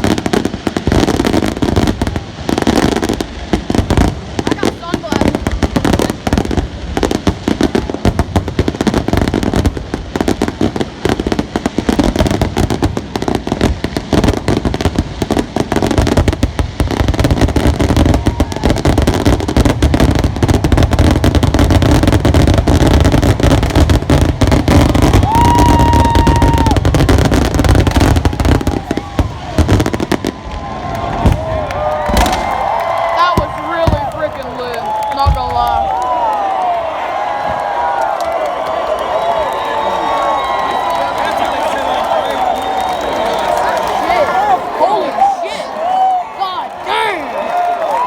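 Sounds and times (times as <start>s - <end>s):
fireworks and firecrackers banging: 0.0s - 48.0s
high whistle: 39.4s - 43.6s.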